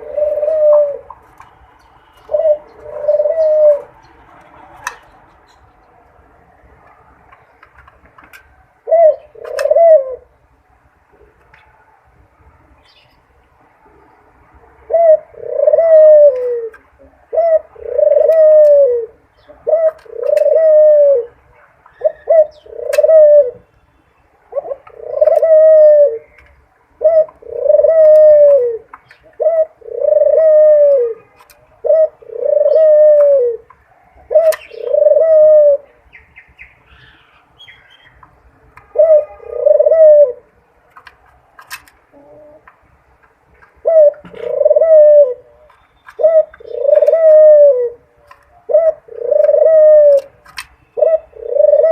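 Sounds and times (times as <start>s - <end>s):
dove cooing: 0.0s - 1.4s, 2.1s - 5.6s, 8.8s - 10.4s, 14.7s - 23.7s, 24.5s - 36.0s, 38.8s - 40.5s, 42.1s - 42.7s, 43.7s - 51.9s.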